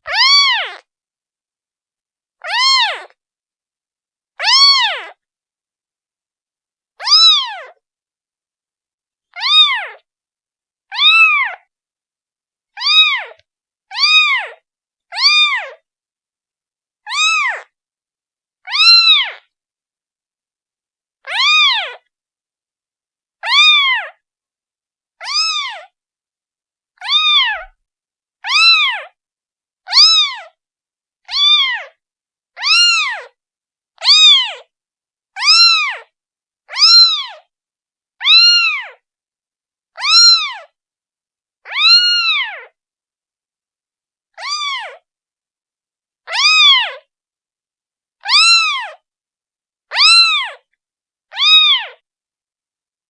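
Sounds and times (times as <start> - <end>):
kitten meowing: 0.1 - 0.9, 2.4 - 3.2, 4.4 - 5.2, 7.0 - 7.8, 9.4 - 10.0, 10.9 - 11.7, 12.8 - 15.8, 17.1 - 17.7, 18.7 - 19.4, 21.3 - 22.0, 23.4 - 24.2, 25.2 - 25.9, 27.0 - 27.8, 28.4 - 29.2, 29.9 - 30.6, 31.2 - 32.0, 32.6 - 33.4, 34.0 - 34.6, 35.4 - 36.1, 36.7 - 37.5, 38.2 - 39.0, 40.0 - 40.7, 41.6 - 42.8, 44.4 - 45.0, 46.3 - 47.1, 48.2 - 49.0, 49.9 - 50.7, 51.3 - 52.0.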